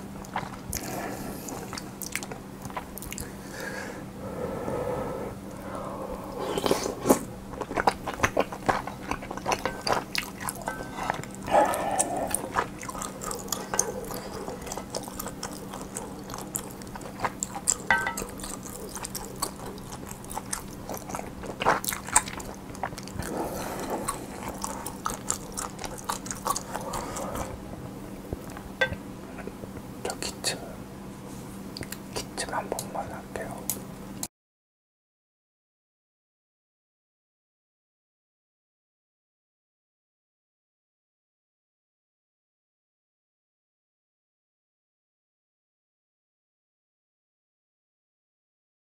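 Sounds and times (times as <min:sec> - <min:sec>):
faint low electrical hum: 0:00.0 - 0:34.3
chewing and biting: 0:00.2 - 0:03.4, 0:06.5 - 0:27.6.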